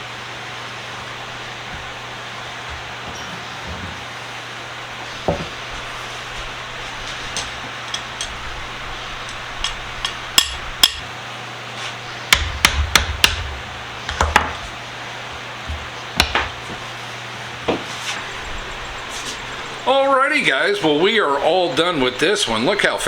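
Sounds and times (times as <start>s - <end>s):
steady low hum: 0.0s - 23.0s
hard objects knocking: 12.3s - 14.6s, 15.7s - 16.8s.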